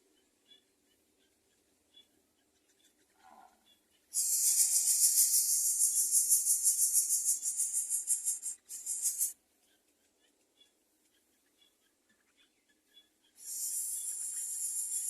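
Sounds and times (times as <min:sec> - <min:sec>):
bird chick hissing in pulses: 0:04.1 - 0:09.3, 0:13.4 - 0:15.0.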